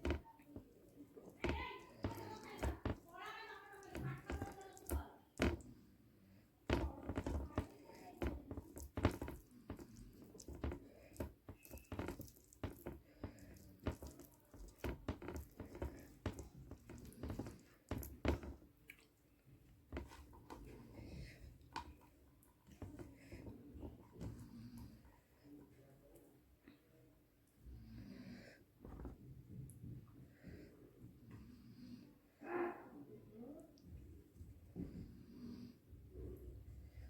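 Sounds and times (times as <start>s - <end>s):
person chewing: 8.6s - 18.2s, 18.8s - 19.2s.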